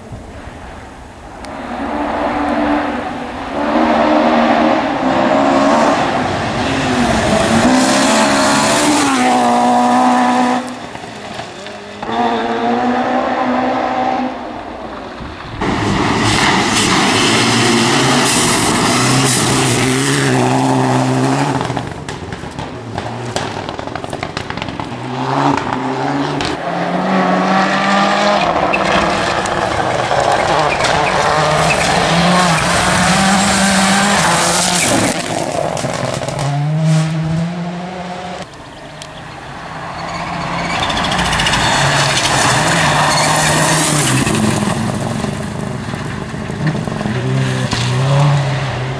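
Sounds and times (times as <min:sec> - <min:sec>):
rally car engines revving: 0:01.3 - 0:48.9.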